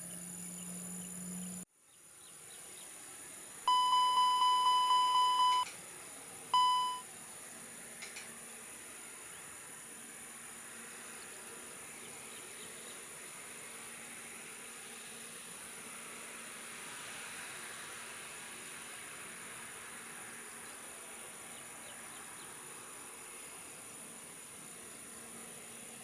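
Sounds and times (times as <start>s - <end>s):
electronic beep: 3.7s - 5.7s, 6.6s - 7.0s.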